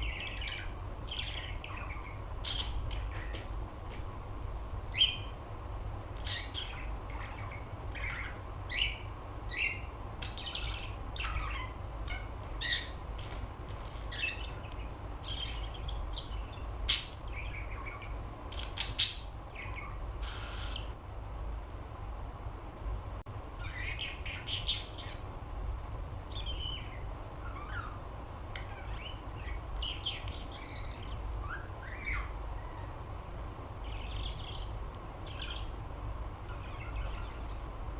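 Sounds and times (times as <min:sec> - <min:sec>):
budgerigar chirping and squawking: 0:00.0 - 0:03.4, 0:06.2 - 0:21.0, 0:28.6 - 0:32.9, 0:33.8 - 0:35.8.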